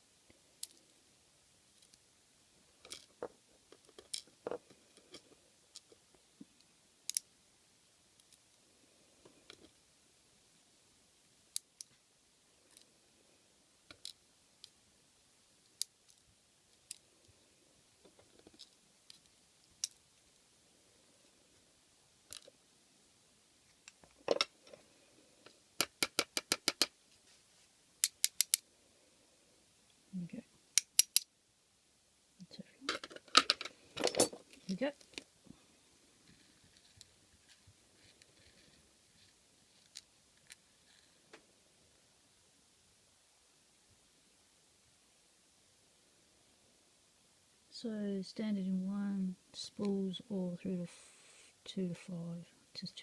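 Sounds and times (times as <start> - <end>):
lock-picking tools clicking: 28.0 - 28.6, 30.8 - 31.3.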